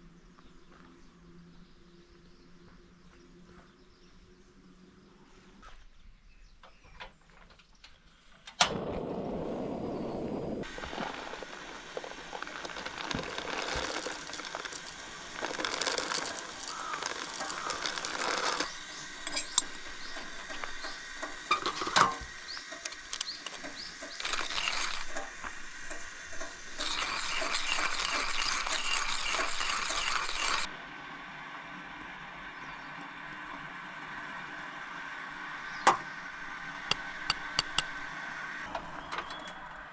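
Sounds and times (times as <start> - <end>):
steady hiss: 8.2 - 30.7
sharp clicks: 36.9 - 38.0.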